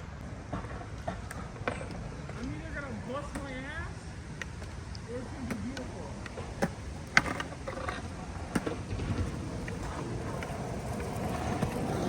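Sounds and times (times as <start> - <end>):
skateboard clacks: 0.0 - 3.7, 4.3 - 12.0
skateboard wheels rolling: 0.0 - 12.0.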